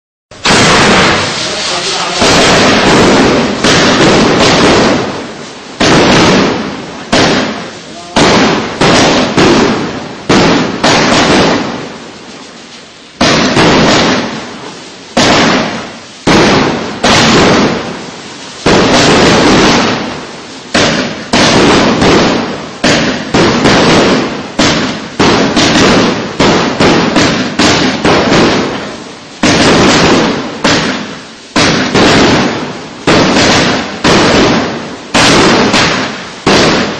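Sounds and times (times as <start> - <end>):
fireworks banging: 0.3 - 36.9.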